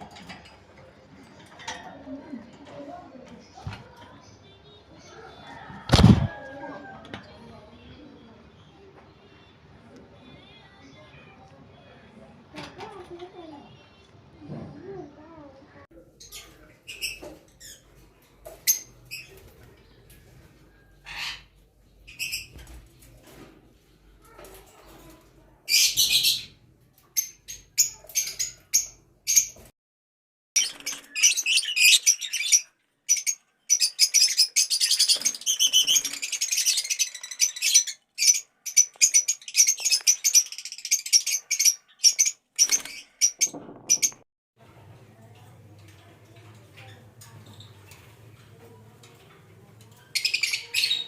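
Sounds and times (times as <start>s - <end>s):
lovebirds chirping: 30.6s - 44.2s.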